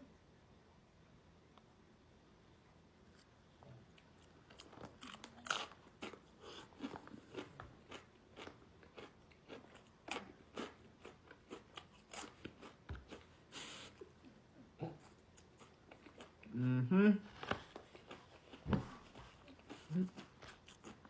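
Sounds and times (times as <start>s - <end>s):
chewing crunchy chips: 3.9s - 14.3s, 14.9s - 16.6s, 17.5s - 21.0s.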